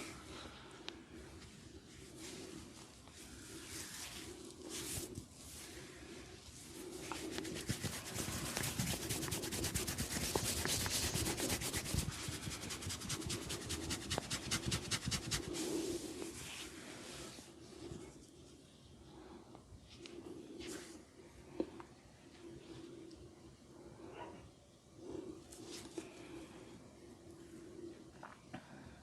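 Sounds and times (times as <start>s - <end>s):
hands rubbing through hair: 2.0s - 5.8s, 6.8s - 18.4s.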